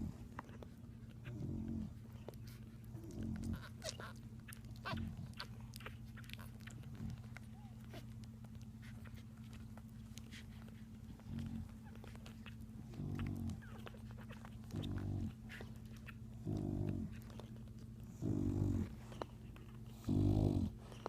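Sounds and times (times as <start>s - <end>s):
dog snoring: 1.2s - 2.0s, 3.0s - 4.1s, 11.2s - 11.7s, 12.9s - 13.9s, 14.6s - 15.6s, 16.4s - 17.4s, 18.0s - 19.3s, 19.9s - 21.0s.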